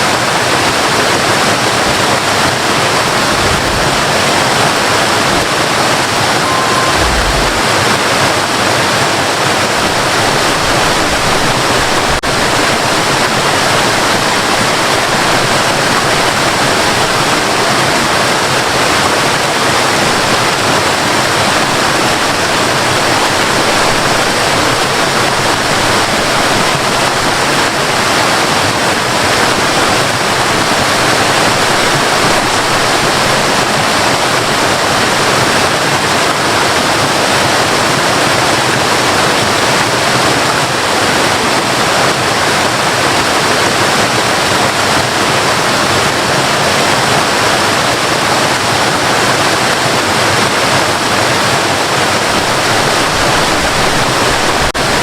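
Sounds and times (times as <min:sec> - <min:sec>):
waterfall roaring: 0:00.0 - 0:55.0.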